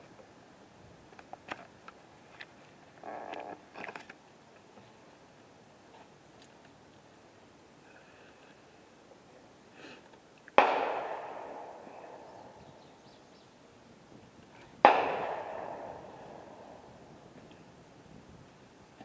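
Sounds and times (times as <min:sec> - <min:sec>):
rifle shots echoing: 0:10.6 - 0:12.6, 0:14.8 - 0:16.9.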